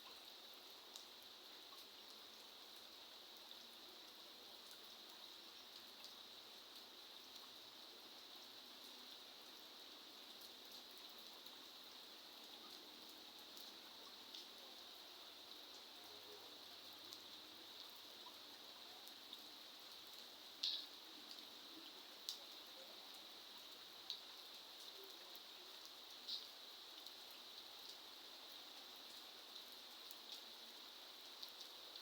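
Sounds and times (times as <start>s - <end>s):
faint steady rain: 0.0s - 32.0s
single raindrops clicking: 20.1s - 21.5s, 26.2s - 27.2s.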